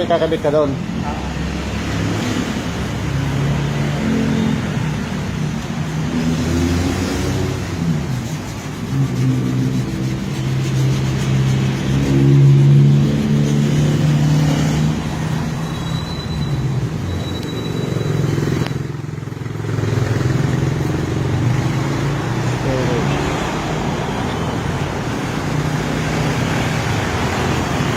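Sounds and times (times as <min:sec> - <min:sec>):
vehicle engine running: 0:02.5 - 0:15.6, 0:18.0 - 0:23.0.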